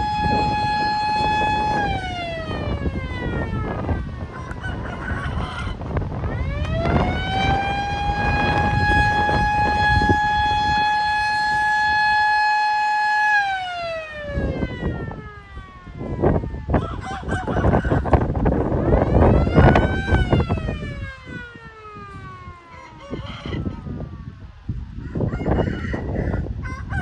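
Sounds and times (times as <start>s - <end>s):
warning siren winding: 0.0s - 14.6s
wind rumble on microphone: 0.0s - 27.0s.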